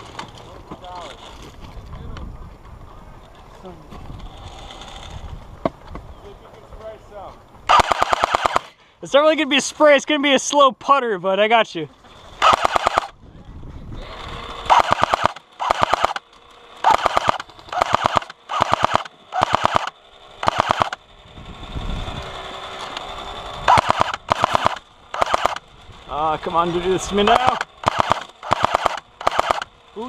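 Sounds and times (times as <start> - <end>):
airsoft gun firing bursts: 7.7 - 8.8, 12.4 - 13.2, 14.7 - 16.2, 16.8 - 21.0, 23.7 - 25.6, 27.3 - 29.7.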